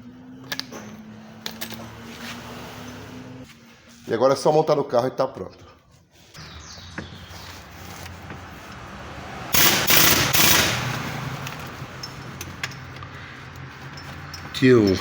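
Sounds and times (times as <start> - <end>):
low workshop hum: 0.0 - 15.0
pneumatic impact wrench rattling: 9.5 - 14.6.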